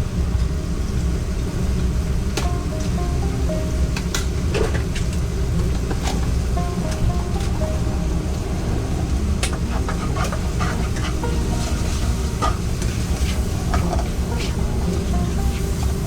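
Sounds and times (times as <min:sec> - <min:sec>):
steady low rumble: 0:00.9 - 0:16.0
food sizzling in a pan: 0:02.4 - 0:16.0
utensil stirring and scraping: 0:09.6 - 0:16.0.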